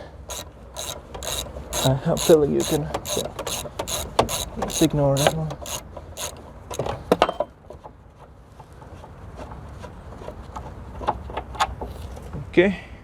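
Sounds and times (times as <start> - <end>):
faint ticks: 0.0 - 6.8
metal tools clicking and knocking: 0.3 - 7.5.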